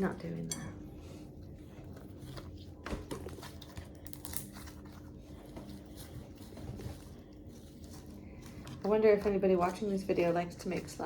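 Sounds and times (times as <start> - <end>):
slime crackling and tearing: 3.4 - 5.2.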